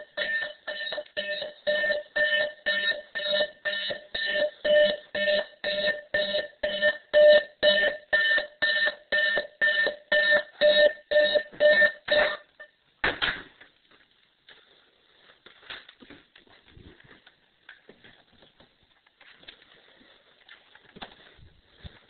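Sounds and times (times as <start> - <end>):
electronic alarm clock beeping: 0.0 - 12.7
faint rustling: 13.8 - 22.0.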